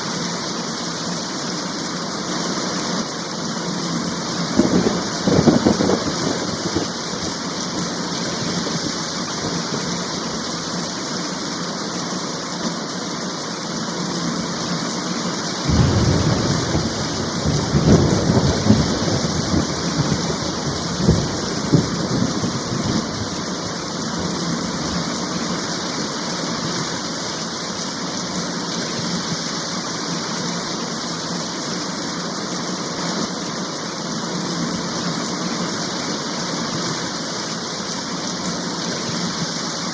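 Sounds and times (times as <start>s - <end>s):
heavy rain: 0.0s - 39.9s
thunder rumbling: 4.5s - 7.4s, 15.7s - 25.1s.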